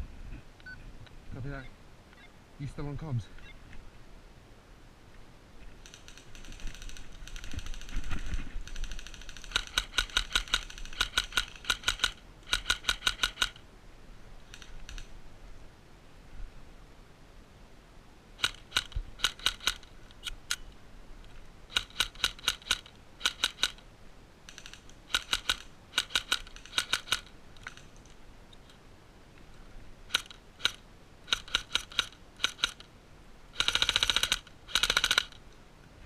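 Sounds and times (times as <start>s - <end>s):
airsoft guns firing: 8.8s - 13.6s, 24.6s - 27.3s, 33.6s - 35.4s.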